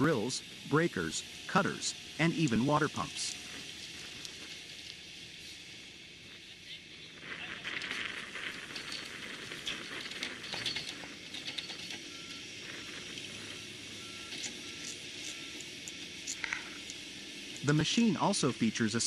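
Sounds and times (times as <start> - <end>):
construction machinery hiss: 0.0 - 7.3, 11.9 - 19.0.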